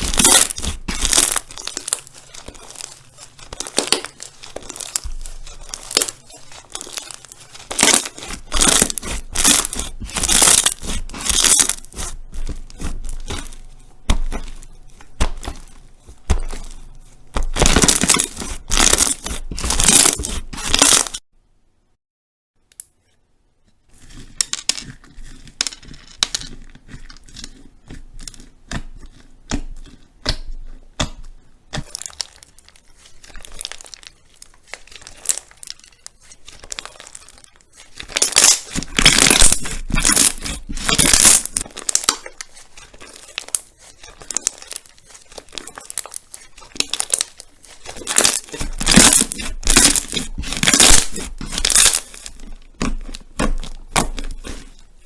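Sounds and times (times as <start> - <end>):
slime crackling and popping: 0.0 - 21.2, 24.0 - 55.0.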